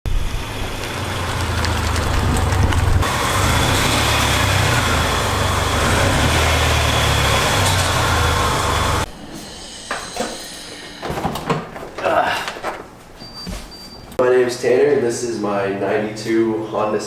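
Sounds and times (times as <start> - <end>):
road noise: 0.0 - 9.1
car engine running: 0.1 - 9.1.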